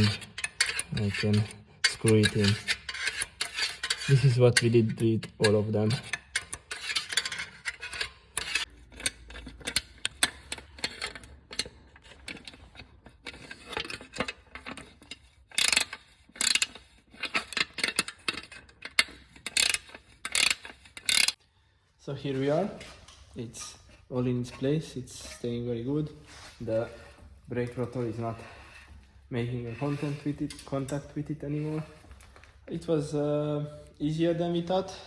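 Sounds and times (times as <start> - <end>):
hand tools clicking on bolts: 0.0 - 21.4.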